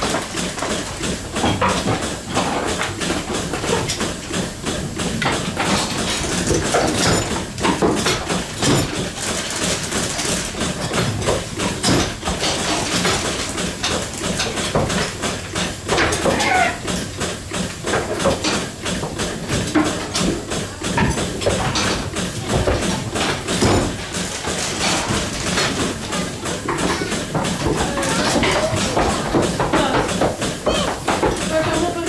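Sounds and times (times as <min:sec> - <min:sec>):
milking machinery humming: 0:00.0 - 0:32.0
goats: 0:16.2 - 0:16.9, 0:26.2 - 0:31.9
metallic clanks and knocks: 0:17.9 - 0:32.0.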